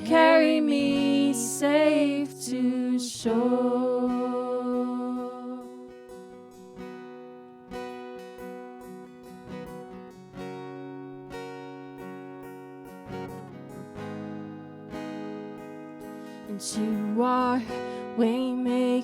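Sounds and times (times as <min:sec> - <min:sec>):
acoustic guitar strumming chords: 0:00.0 - 0:19.0.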